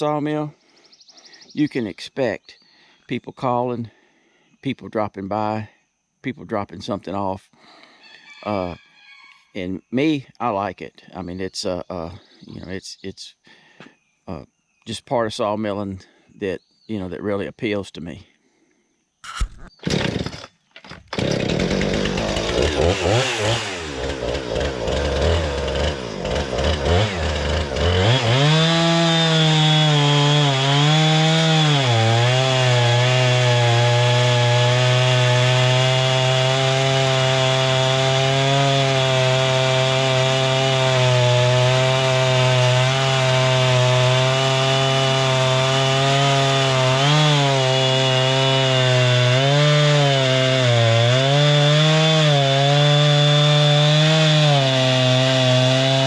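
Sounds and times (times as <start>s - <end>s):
saw blade cutting log: 19.2s - 56.0s
sawmill gas engine revving: 19.8s - 56.0s.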